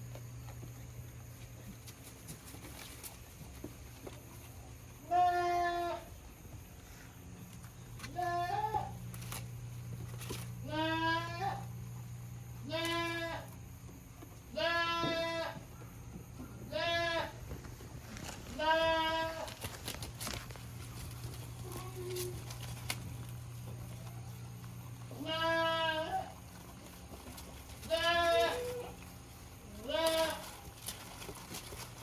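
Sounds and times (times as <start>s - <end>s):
goat bleating: 5.0s - 6.1s, 8.1s - 9.0s, 10.6s - 11.7s, 12.6s - 13.5s, 14.5s - 15.6s, 16.7s - 17.4s, 18.5s - 19.5s, 21.6s - 22.5s, 25.0s - 26.4s, 27.7s - 30.6s.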